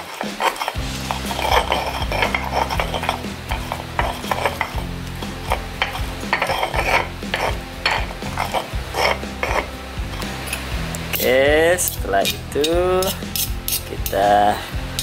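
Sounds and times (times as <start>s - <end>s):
low background music: 0.0s - 15.0s
pestle grinding in a mortar: 0.0s - 15.0s.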